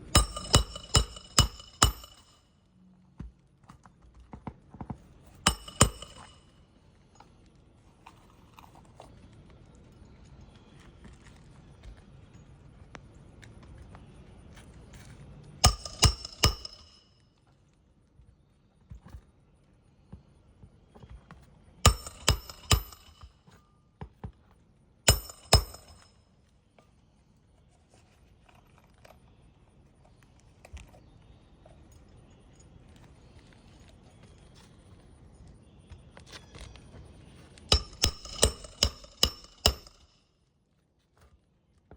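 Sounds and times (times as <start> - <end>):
hammer striking nails: 0.0 - 2.4, 5.5 - 6.5, 15.6 - 17.0, 21.8 - 23.3, 25.1 - 26.1, 37.7 - 40.1.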